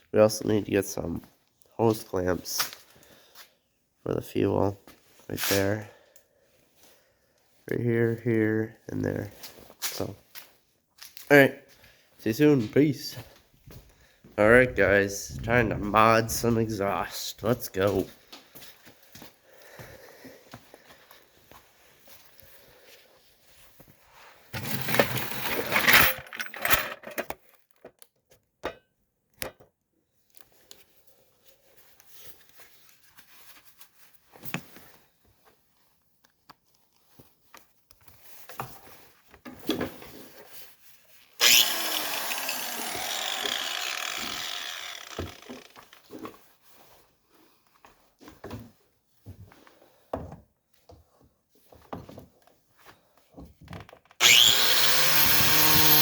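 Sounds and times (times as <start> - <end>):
knocks and clatters of tools: 24.5 - 29.7, 42.9 - 46.4
angle grinder cutting metal pipe: 41.4 - 46.1, 54.2 - 56.0.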